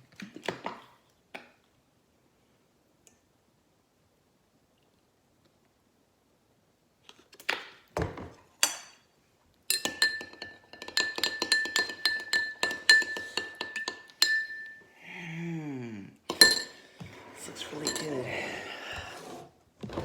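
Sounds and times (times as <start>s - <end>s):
glass ringing: 9.7s - 14.9s, 16.3s - 16.8s, 17.8s - 18.2s
spoon clinking in glass: 9.7s - 14.9s, 16.3s - 16.8s, 17.6s - 18.3s.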